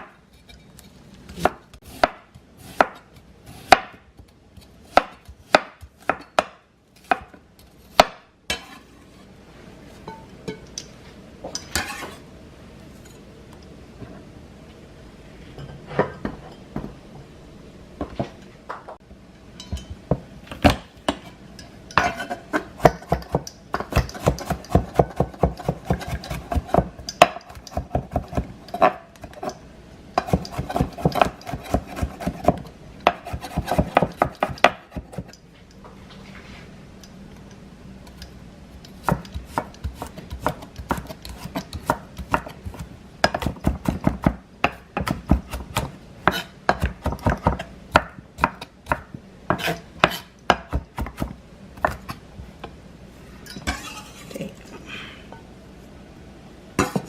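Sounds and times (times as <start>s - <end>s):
knife chopping on cutting board: 1.3s - 4.0s, 22.0s - 29.5s, 30.2s - 35.3s, 39.0s - 52.1s.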